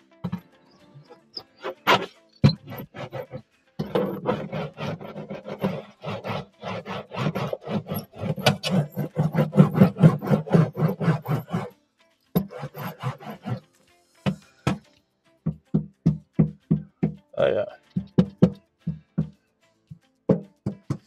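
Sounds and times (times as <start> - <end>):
hand roller rasping on mat: 0.2 - 0.4, 1.0 - 11.7, 12.4 - 13.6, 14.3 - 14.8, 18.0 - 19.3, 20.3 - 21.0.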